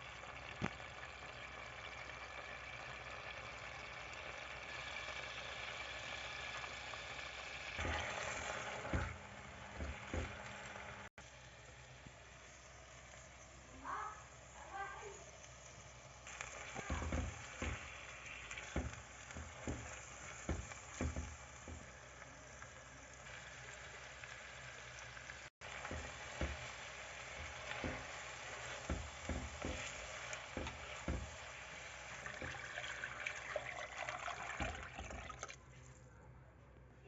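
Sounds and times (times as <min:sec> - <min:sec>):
food sizzling in a hot pan: 0:00.0 - 0:35.3
utensil knocking against pan: 0:09.8 - 0:10.5, 0:16.8 - 0:18.0, 0:18.6 - 0:22.0, 0:25.8 - 0:26.8, 0:27.4 - 0:31.5.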